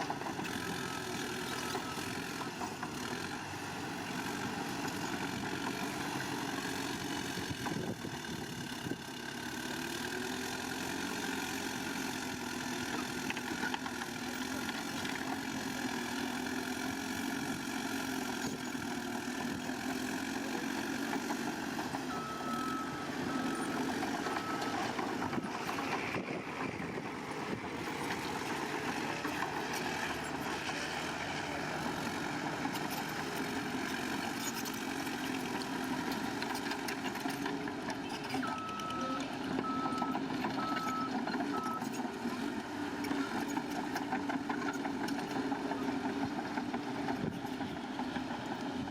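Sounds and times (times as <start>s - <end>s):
heavy machinery diesel engine: 0.0s - 48.9s
reversing beeps: 0.8s - 2.6s, 22.0s - 25.9s, 38.4s - 42.0s.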